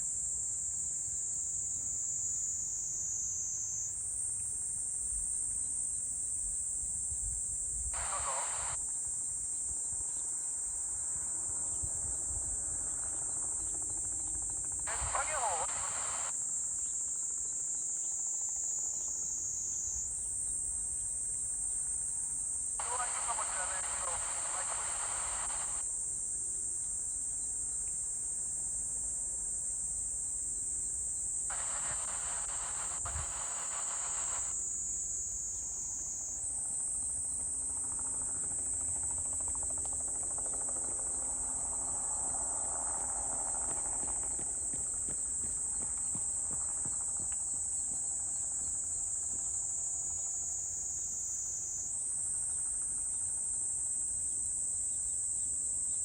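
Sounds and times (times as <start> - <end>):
thin radio-like voice: 8.0 - 8.8, 14.9 - 16.3, 22.8 - 25.8, 31.5 - 34.5.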